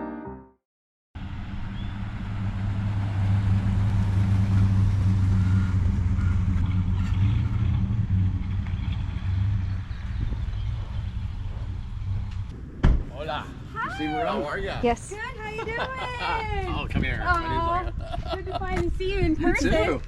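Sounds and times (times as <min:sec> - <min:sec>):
car engine running: 0:01.2 - 0:12.5.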